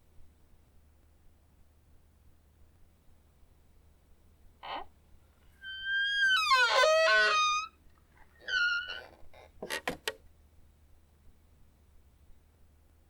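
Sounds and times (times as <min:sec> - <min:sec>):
door hinge creaking: 0:05.6 - 0:07.7, 0:08.4 - 0:10.1.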